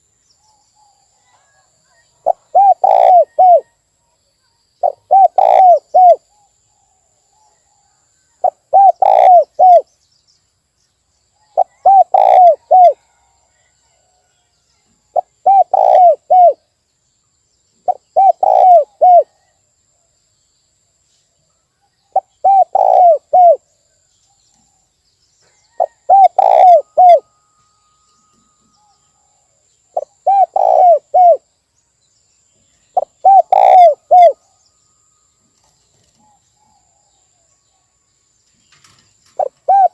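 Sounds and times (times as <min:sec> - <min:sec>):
dove cooing: 0:02.2 - 0:03.7, 0:04.8 - 0:06.2, 0:08.4 - 0:09.9, 0:11.6 - 0:13.1, 0:15.1 - 0:16.6, 0:17.9 - 0:19.4, 0:22.1 - 0:23.6, 0:25.8 - 0:27.3, 0:29.9 - 0:31.4, 0:33.0 - 0:34.4, 0:39.4 - 0:39.9.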